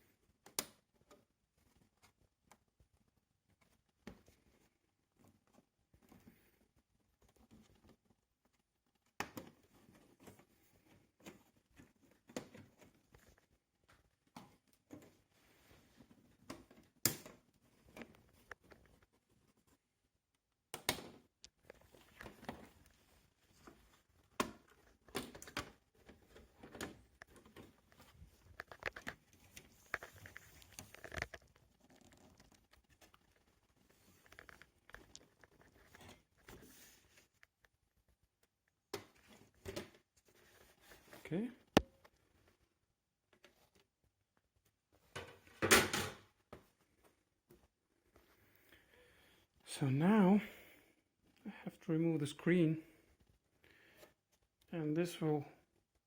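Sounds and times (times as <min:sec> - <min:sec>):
hands handling plastic parts: 0:20.8 - 0:37.7.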